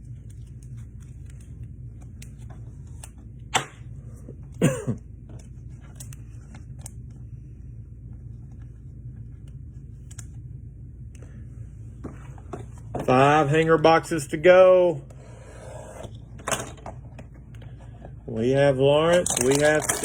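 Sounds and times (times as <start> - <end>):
trading cards rustling: 0.0 - 3.3, 5.2 - 7.6, 18.9 - 20.0
steady low hum: 0.0 - 20.0
man clearing his throat: 4.6 - 5.0.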